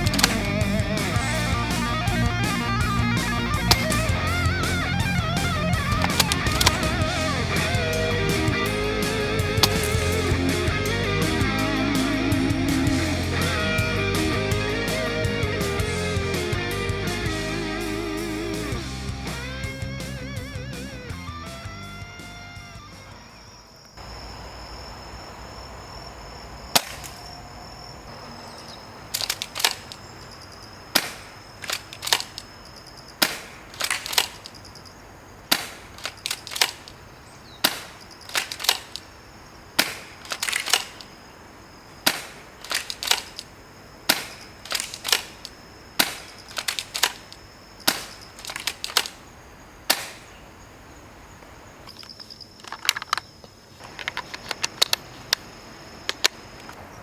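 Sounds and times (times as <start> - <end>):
spring shotgun shots and pumping: 0.0 - 13.0, 26.7 - 50.6.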